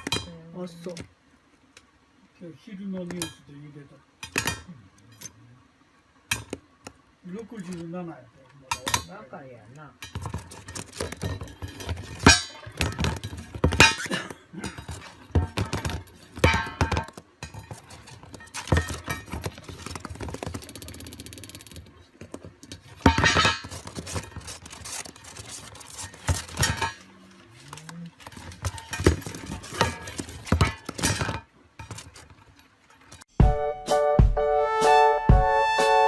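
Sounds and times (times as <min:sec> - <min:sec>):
music: 0:33.3 - 0:36.0.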